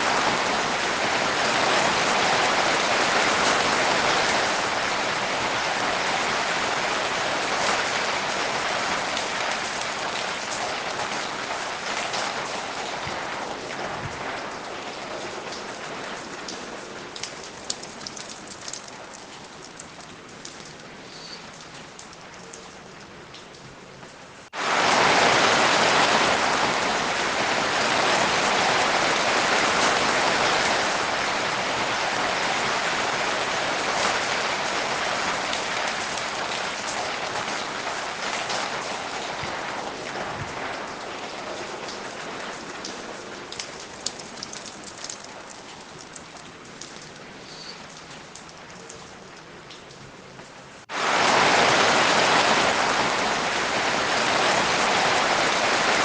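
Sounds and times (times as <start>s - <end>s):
rain falling: 0.0s - 56.0s.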